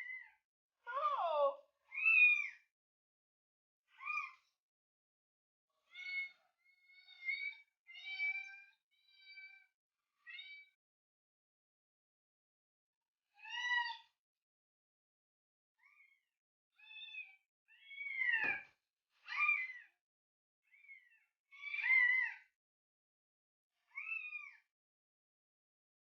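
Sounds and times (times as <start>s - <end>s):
cat meowing: 5.9s - 9.6s.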